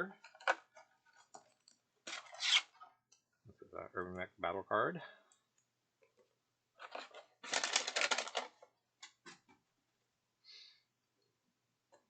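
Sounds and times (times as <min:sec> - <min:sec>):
packaging crackling clicks: 0:06.9 - 0:08.6.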